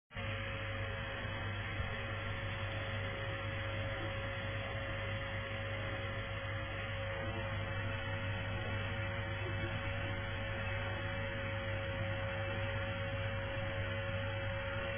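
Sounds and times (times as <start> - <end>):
vacuum cleaner running: 0.2 - 14.9.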